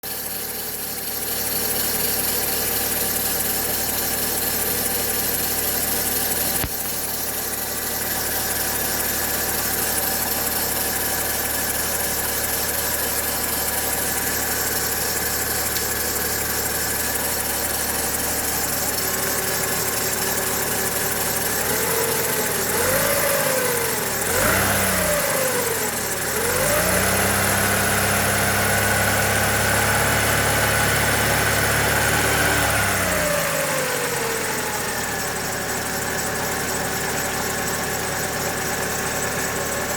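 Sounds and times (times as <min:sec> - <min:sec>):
car engine revving: 0:18.9 - 0:34.2.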